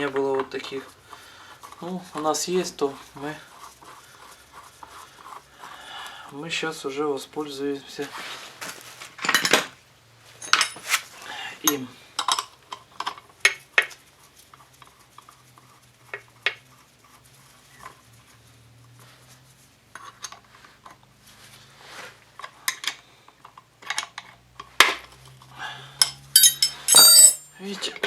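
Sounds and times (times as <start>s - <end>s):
steel tools clinking: 10.4s - 11.0s, 26.0s - 27.5s.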